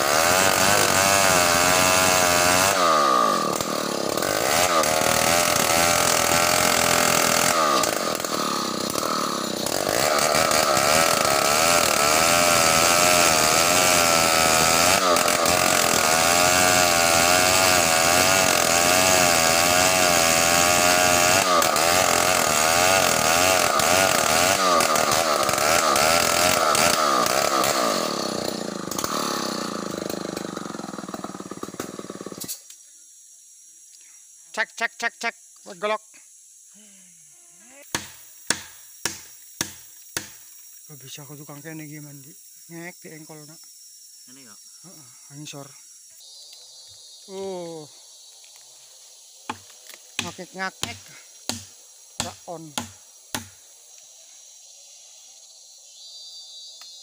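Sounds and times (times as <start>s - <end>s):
chainsaw cutting log: 0.0s - 32.6s, 37.8s - 40.5s, 49.4s - 53.6s.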